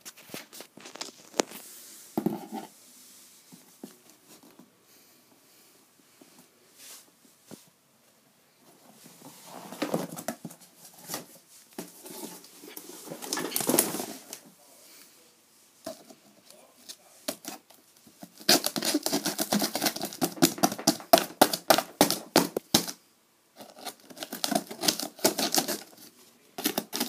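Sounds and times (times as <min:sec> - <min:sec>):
coffee packaging rustling: 0:00.0 - 0:02.7, 0:09.7 - 0:14.4, 0:17.3 - 0:22.9, 0:23.6 - 0:27.0.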